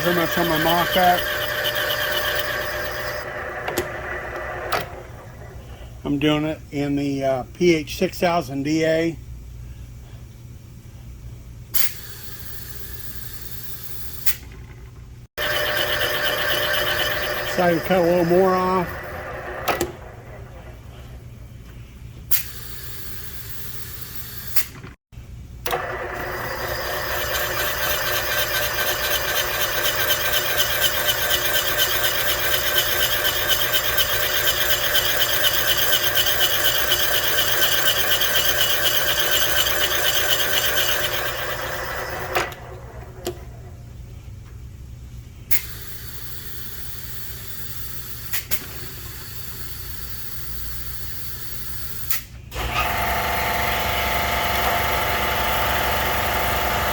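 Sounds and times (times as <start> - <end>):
machine cutter whirring: 0.0 - 5.6, 15.4 - 20.8, 25.7 - 43.4, 52.5 - 56.9
constant low hum: 3.2 - 15.3, 18.4 - 23.8, 42.5 - 52.6.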